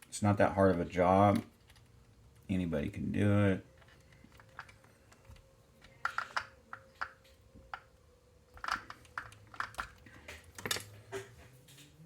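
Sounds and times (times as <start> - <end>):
light clicks of small parts and tools: 3.7 - 12.0.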